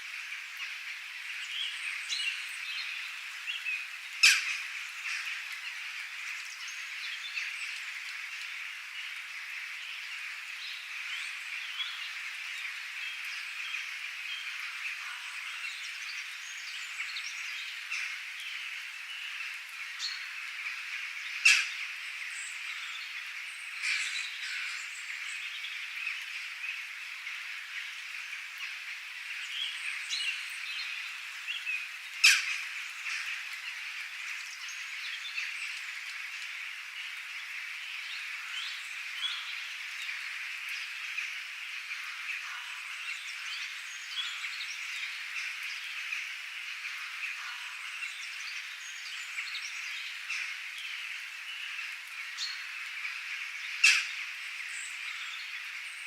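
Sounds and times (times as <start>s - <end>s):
birds calling and chirping: 0.3s - 56.0s
sharp loud bird calls: 52.6s - 55.8s.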